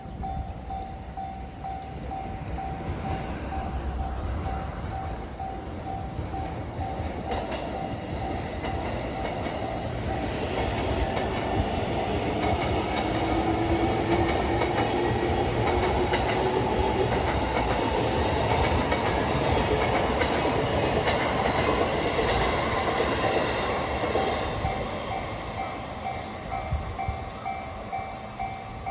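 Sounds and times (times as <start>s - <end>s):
crossing warning bell ringing: 0.0s - 11.1s
train wheels clattering: 6.2s - 25.4s.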